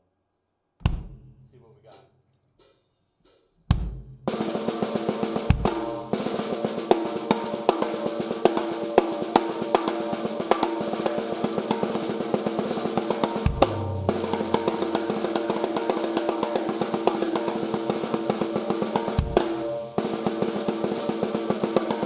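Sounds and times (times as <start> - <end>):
snare drum rolls: 3.7 - 22.0
bass drum strokes: 12.9 - 16.8
deep boom: 13.5 - 15.3.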